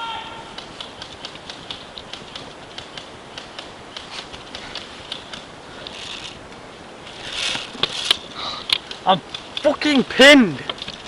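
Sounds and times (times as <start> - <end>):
airsoft gunfire clicks and pops: 0.6 - 5.5.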